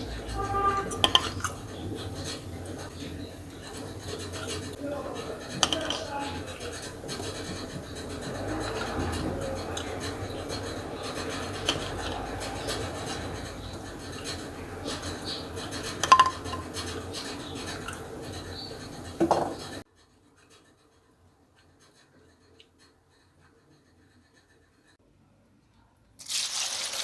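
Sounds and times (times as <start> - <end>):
rubbing and scraping: 0.0 - 25.0
glass dishware clinking: 16.0 - 16.7.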